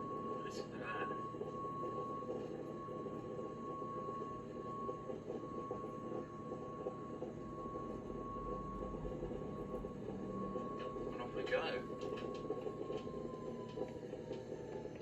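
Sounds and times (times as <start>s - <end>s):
jet engines droning with whine: 0.0s - 15.0s.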